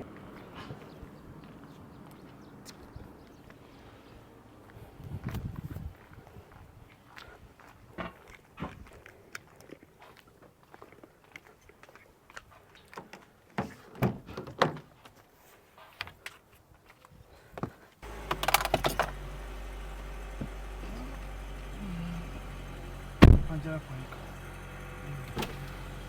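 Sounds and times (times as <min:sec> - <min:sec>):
rattle of clicks: 0:18.0 - 0:21.4
car engine hum: 0:18.0 - 0:26.0.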